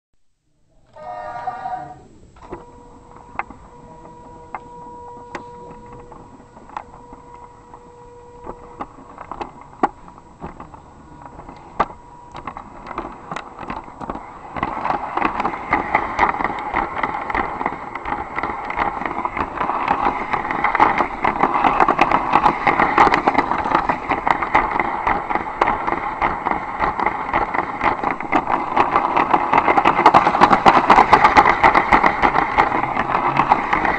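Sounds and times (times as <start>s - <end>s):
brief pitched tone: 0.8s - 8.8s
toy train rattling on plastic track: 0.9s - 33.9s
scattered clicks: 2.4s - 33.9s.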